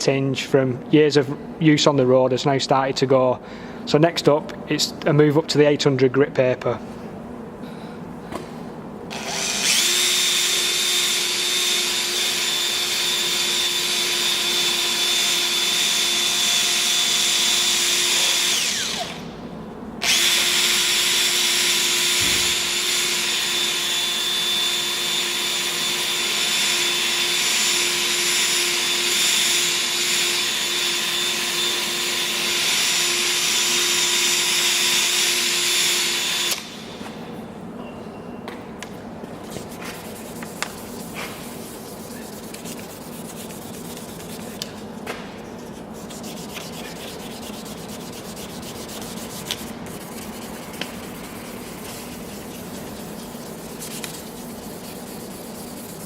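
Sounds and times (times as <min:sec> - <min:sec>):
electric drill sanding plastic: 0:09.1 - 0:19.2, 0:20.0 - 0:36.8.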